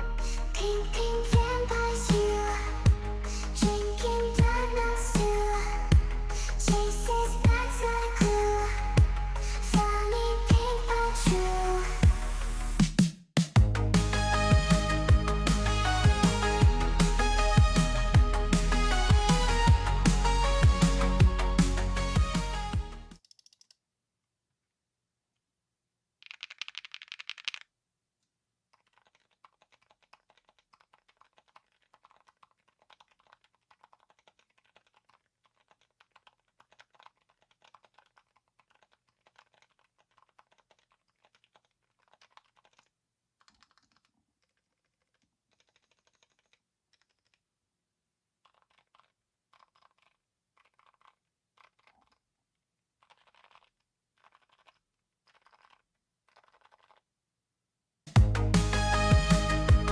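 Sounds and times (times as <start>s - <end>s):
quiet mechanical keyboard typing: 23.1s - 23.8s, 26.2s - 27.6s, 28.7s - 47.4s, 48.4s - 52.2s, 53.0s - 57.0s.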